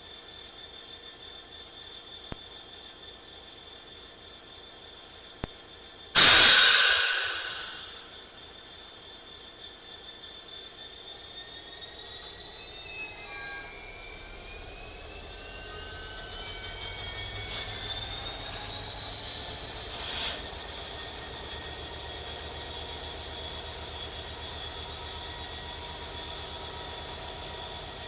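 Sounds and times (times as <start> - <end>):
bursts of hiss: 6.2 - 8.0
train wheels squealing: 6.2 - 8.0, 11.0 - 28.0.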